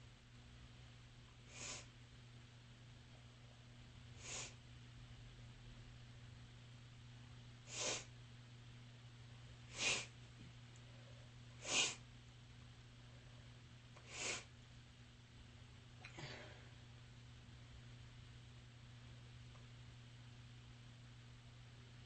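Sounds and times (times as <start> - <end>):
person sneezing: 9.7 - 10.1, 11.6 - 12.0.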